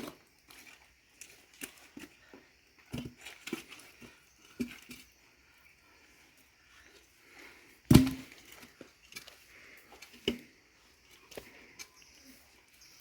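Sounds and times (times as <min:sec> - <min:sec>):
firewood knocking and rustling: 0:07.9 - 0:09.3.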